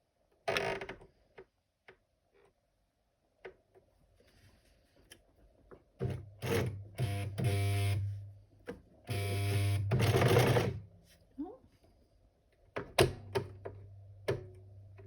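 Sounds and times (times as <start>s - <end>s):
sewing machine stitching: 9.1s - 10.8s.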